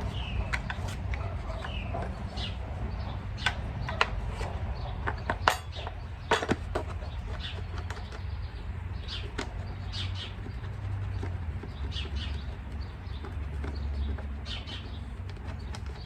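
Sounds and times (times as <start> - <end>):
sharp clicks and knocks: 0.0 - 2.2, 3.3 - 8.3.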